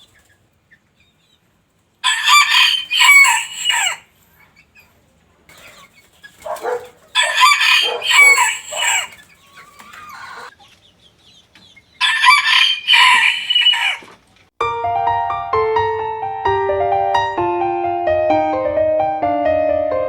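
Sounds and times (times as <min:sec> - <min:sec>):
rooster crowing: 0:02.0 - 0:04.1, 0:06.5 - 0:10.5, 0:12.0 - 0:14.1.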